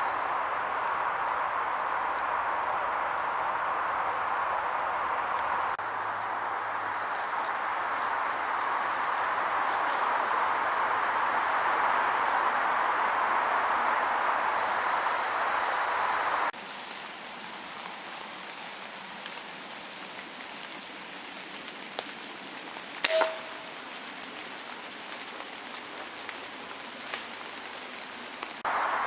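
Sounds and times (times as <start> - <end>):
outdoor hiss: 0.0 - 29.0
air rifle firing: 23.1 - 23.7.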